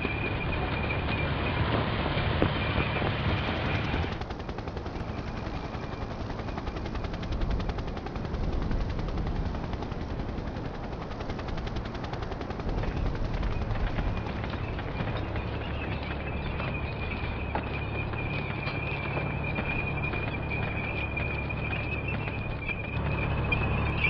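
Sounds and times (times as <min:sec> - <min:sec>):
steady high tone: 0:14.0 - 0:24.0.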